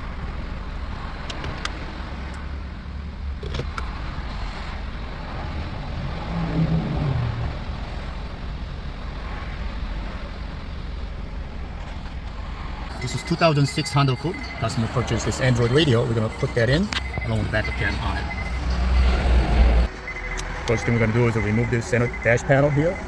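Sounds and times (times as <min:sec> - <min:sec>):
motor vehicle low rumble: 0:00.0 - 0:23.0.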